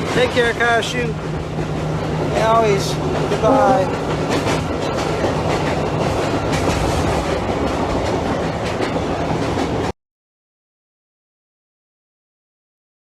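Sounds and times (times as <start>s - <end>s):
wheels clicking over rail joints: 0.0s - 9.9s
train rumbling at speed: 0.0s - 10.0s.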